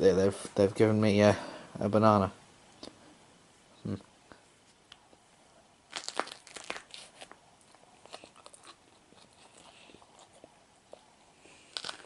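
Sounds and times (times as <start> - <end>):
crunching bites of banana: 5.9 - 12.0
person chewing: 5.9 - 12.0.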